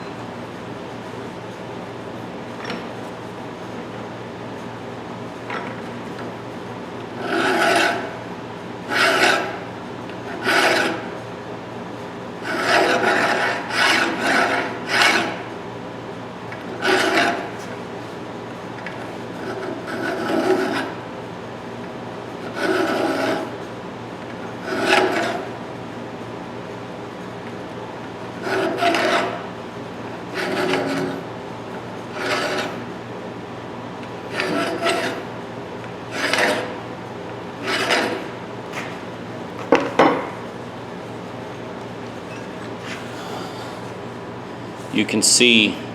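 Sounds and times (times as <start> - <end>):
file scraping metal teeth: 37.6 - 39.0.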